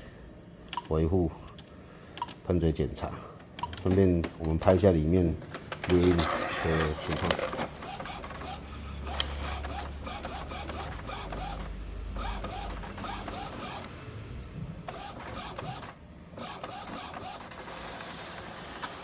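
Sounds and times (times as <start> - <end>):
inkjet printer head moving: 3.6 - 13.9, 14.7 - 19.0
printer ticks: 3.6 - 14.0, 14.6 - 19.0.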